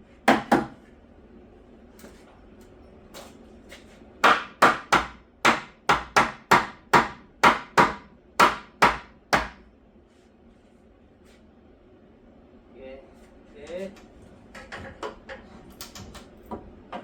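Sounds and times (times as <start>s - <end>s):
hammer nailing wood: 0.3s - 0.8s, 4.2s - 9.6s.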